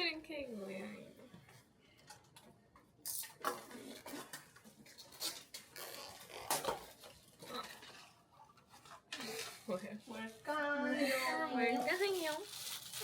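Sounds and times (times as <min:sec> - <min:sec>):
gift wrapping tearing and rustling: 0:11.6 - 0:13.0.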